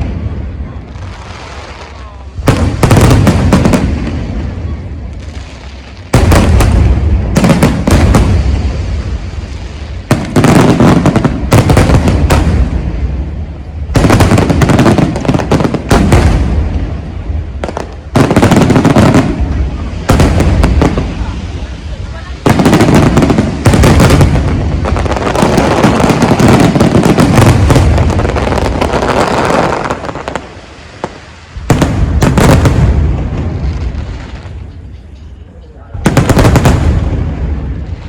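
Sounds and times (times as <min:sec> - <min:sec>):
low rumbling echo: 0:00.0 - 0:29.2, 0:30.0 - 0:38.0
fireworks bangs: 0:00.0 - 0:38.0.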